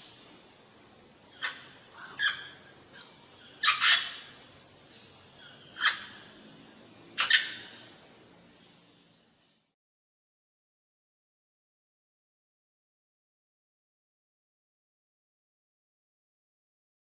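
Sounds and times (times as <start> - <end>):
faint high-pitched hiss: 0.0 - 9.8
bird harsh calls: 1.3 - 6.6, 7.2 - 7.9.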